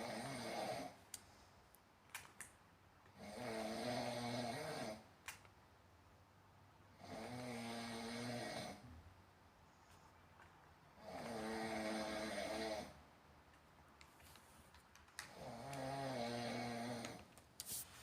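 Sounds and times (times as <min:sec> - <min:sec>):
person snoring: 0:00.0 - 0:01.0, 0:03.2 - 0:05.0, 0:07.0 - 0:09.0, 0:11.0 - 0:13.0, 0:15.3 - 0:17.3
quiet breathing: 0:09.6 - 0:10.4.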